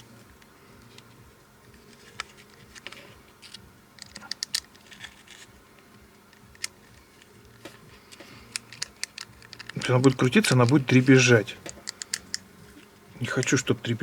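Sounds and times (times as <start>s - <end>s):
small clicks and taps of lamp parts: 1.7s - 4.9s, 6.3s - 10.9s, 11.6s - 13.6s.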